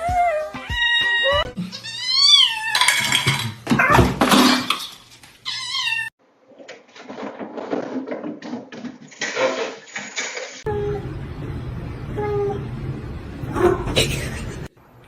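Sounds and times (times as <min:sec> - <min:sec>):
cat meowing: 0:00.0 - 0:03.0, 0:05.5 - 0:06.1.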